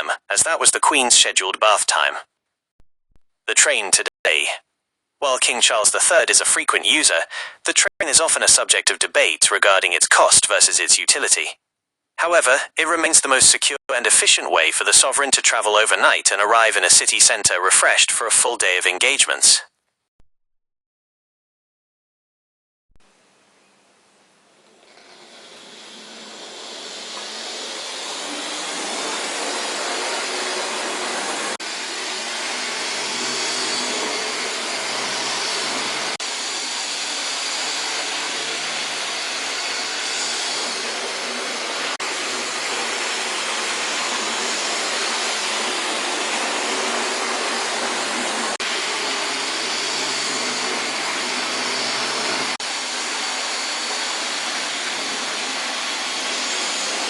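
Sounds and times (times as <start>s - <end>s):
train rushing along track: 25.0s - 57.0s.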